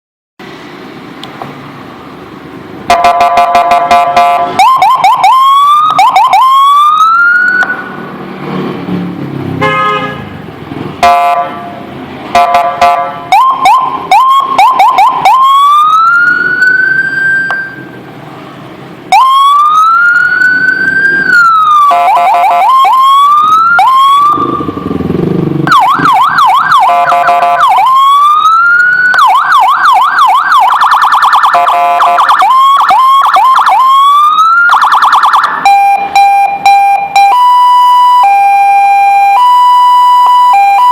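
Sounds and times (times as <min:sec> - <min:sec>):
horn-like siren blasts: 0:02.9 - 0:08.0, 0:09.6 - 0:10.3, 0:11.0 - 0:18.0, 0:19.1 - 0:40.9
electronic siren wailing and yelping: 0:02.9 - 0:08.1, 0:12.4 - 0:17.9, 0:19.1 - 0:40.9.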